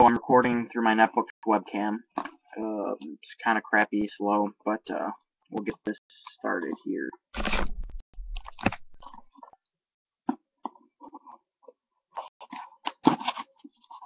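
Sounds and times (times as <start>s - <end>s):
rustling and crinkling: 7.4s - 9.6s, 10.6s - 14.0s.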